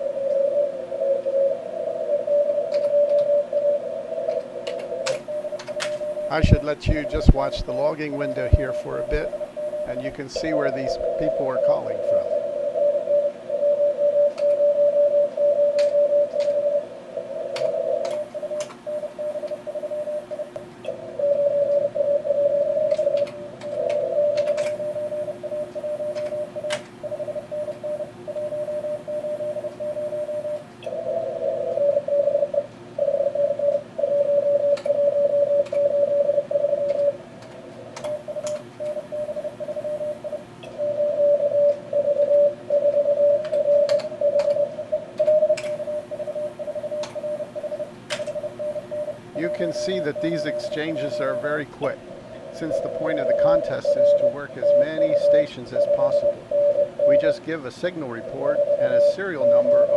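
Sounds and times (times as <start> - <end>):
faint steady tone: 0.0 - 37.2, 38.0 - 59.9
radio band hiss: 0.1 - 32.5, 38.1 - 59.9
morse code beeps: 4.7 - 16.9, 21.2 - 30.6, 31.7 - 37.2, 38.0 - 59.9
sharp clicks: 17.5 - 18.8, 36.9 - 39.0.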